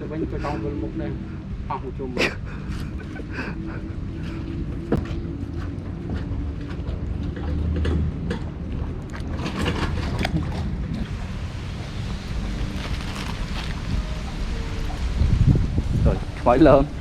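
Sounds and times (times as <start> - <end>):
wind buffeting microphone: 7.3 - 17.0.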